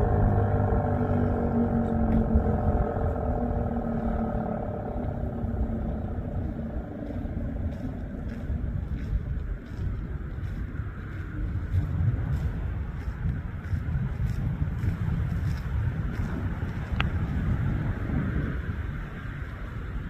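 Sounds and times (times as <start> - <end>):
tornado siren winding down: 0.0 - 8.7
traffic noise: 0.0 - 20.0
wind rumble: 0.0 - 20.0.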